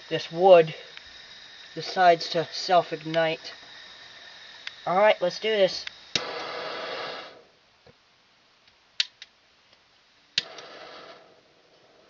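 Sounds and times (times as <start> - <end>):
igniter clicks: 0.0 - 7.0
gas torch hissing: 0.0 - 7.6, 10.4 - 12.0.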